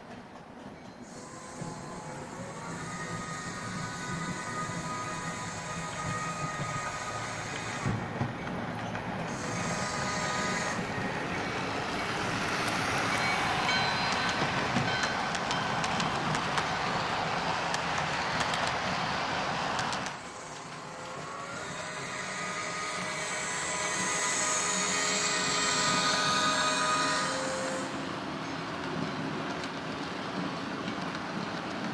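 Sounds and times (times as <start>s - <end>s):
model train wheel noise: 1.0s - 31.9s
model train motor whine: 1.1s - 15.0s, 20.0s - 28.1s.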